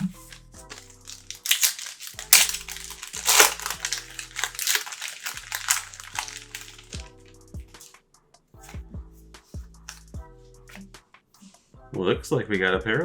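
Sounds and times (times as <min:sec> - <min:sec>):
foil wrapper tearing and crinkling: 0:00.0 - 0:07.1
soft background music: 0:00.0 - 0:13.0.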